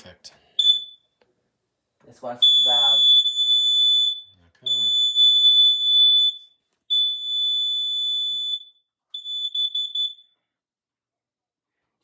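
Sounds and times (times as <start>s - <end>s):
shrill smoke alarm tone: 0.6s - 1.2s, 2.4s - 10.5s.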